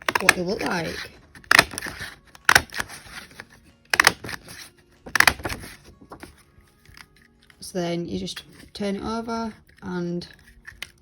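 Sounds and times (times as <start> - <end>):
craft hole punch clacking: 1.4 - 2.8, 3.9 - 4.3.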